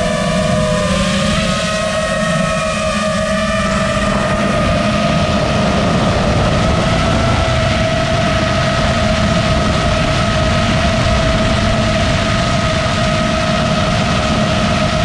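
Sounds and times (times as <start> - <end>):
drone motors whining: 0.0 - 15.0.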